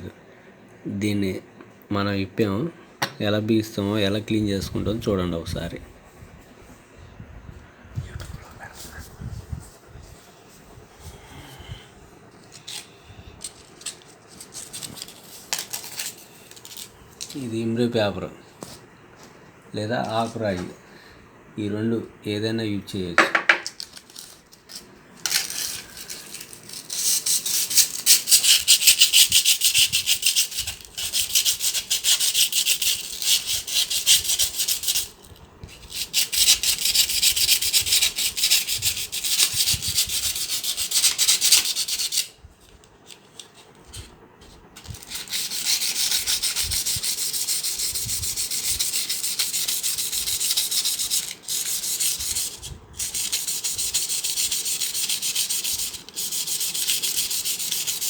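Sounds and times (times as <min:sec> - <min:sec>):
metal rod scrubbed with abrasive: 0:35.9 - 0:42.3, 0:44.4 - 0:58.0.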